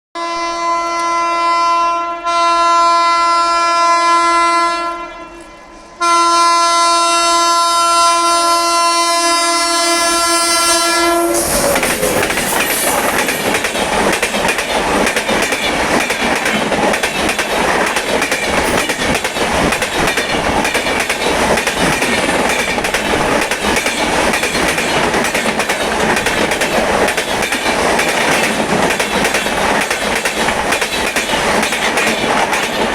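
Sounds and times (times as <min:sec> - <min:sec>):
twin-tone locomotive horn: 0:00.2 - 0:12.4
train passing with loud rush: 0:00.2 - 0:32.9.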